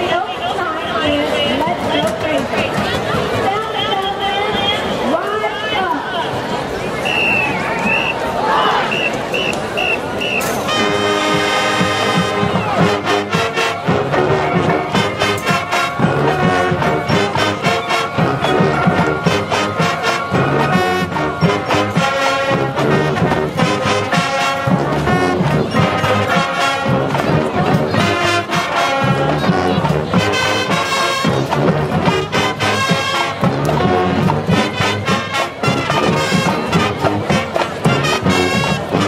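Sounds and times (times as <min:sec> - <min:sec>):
marching band brass: 0:00.0 - 0:39.0
drumline beat: 0:08.9 - 0:39.0.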